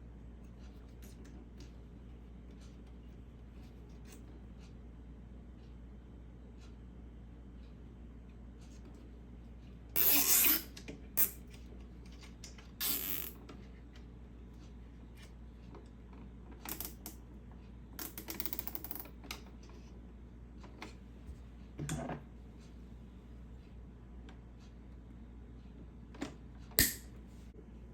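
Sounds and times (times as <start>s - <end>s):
zip ties pulled tight: 10.0s - 11.4s, 12.8s - 13.3s.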